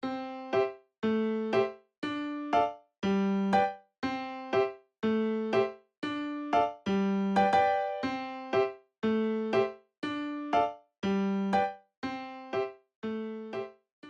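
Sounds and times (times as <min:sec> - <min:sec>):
keyboard playing paired notes: 0:06.3 - 0:13.7.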